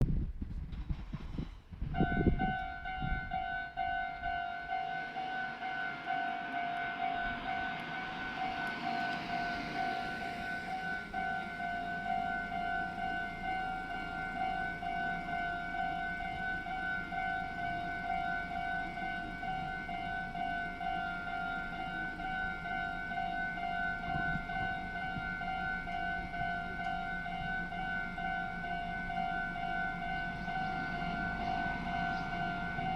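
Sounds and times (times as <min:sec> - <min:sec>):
level crossing warning bell: 0:02.0 - 0:32.9
rushing noise: 0:04.1 - 0:12.8.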